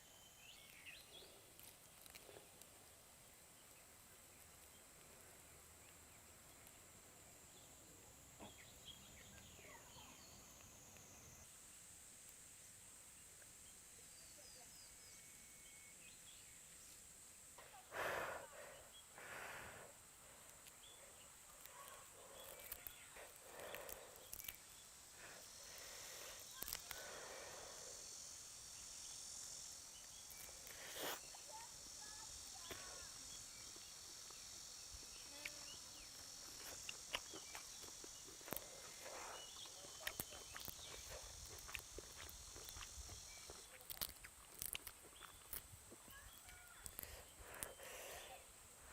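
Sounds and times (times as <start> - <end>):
high insect drone: 0.0 - 48.9
faint bird chirps: 8.4 - 11.4, 13.6 - 17.0, 28.7 - 44.2, 45.1 - 48.9.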